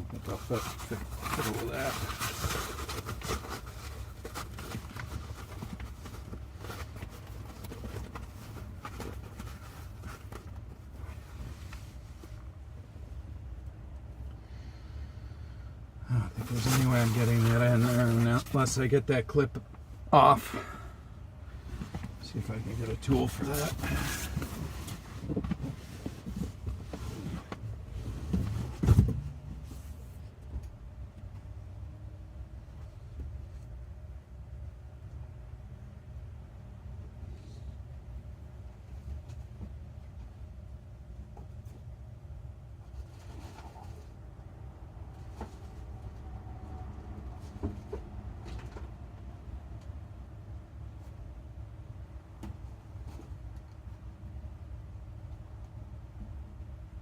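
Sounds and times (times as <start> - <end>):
hands handling upholstery and plastic: 0.0 - 12.7, 16.4 - 18.8, 21.7 - 30.8
steady low hum: 0.0 - 57.0.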